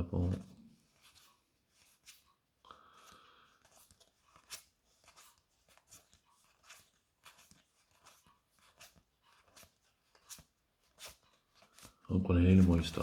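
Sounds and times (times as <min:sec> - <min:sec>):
trading cards being flipped: 0:03.0 - 0:13.0.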